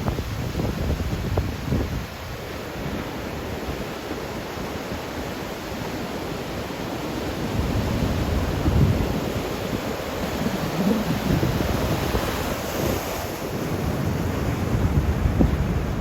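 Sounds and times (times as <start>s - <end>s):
wind buffeting microphone: 0.0s - 3.0s, 7.2s - 16.0s
ocean waves breaking on beach: 0.0s - 16.0s.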